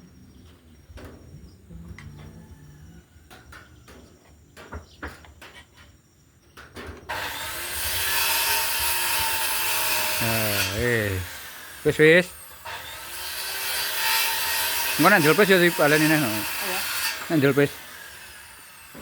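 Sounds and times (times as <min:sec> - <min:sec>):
electric planer shaving wood: 0:07.1 - 0:19.0.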